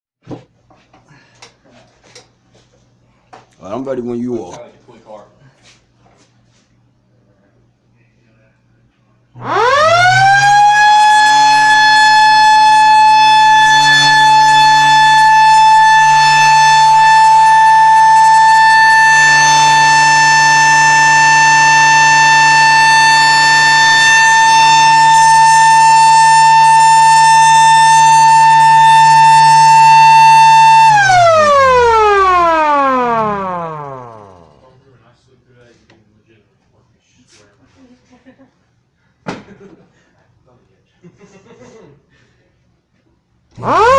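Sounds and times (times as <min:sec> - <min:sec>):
mechanical siren wailing: 0:09.4 - 0:34.7, 0:43.6 - 0:43.9.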